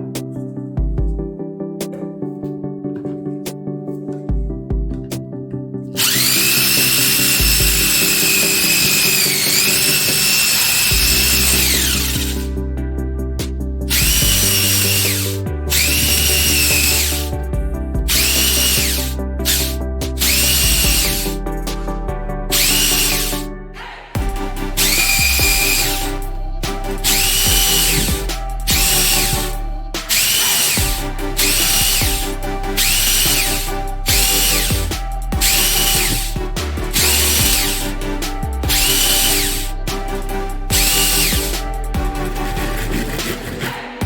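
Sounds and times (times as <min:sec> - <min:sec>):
background music: 0:00.0 - 0:44.0
power tool motor whining: 0:06.0 - 0:12.4, 0:14.0 - 0:17.2, 0:18.1 - 0:21.2, 0:22.5 - 0:23.4, 0:24.8 - 0:26.1, 0:27.0 - 0:32.2, 0:32.8 - 0:37.8, 0:38.7 - 0:39.7, 0:40.8 - 0:41.5.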